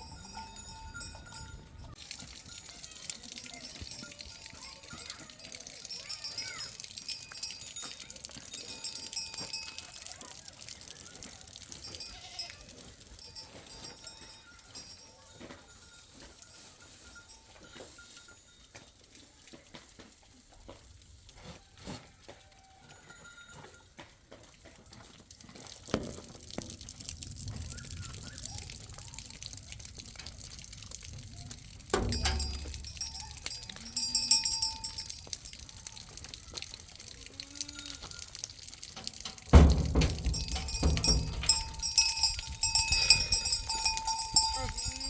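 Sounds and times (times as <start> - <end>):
sheep and goats bleating: 11.9 - 12.9, 32.1 - 34.9, 37.2 - 38.3, 41.0 - 45.0
knocks and clicks: 39.0 - 42.6.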